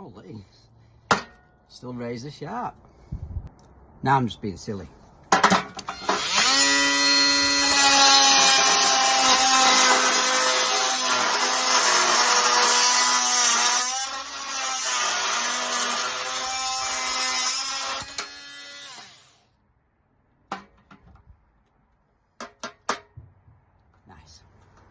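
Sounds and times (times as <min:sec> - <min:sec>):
oscillating multi-tool cutting: 0:05.8 - 0:19.4.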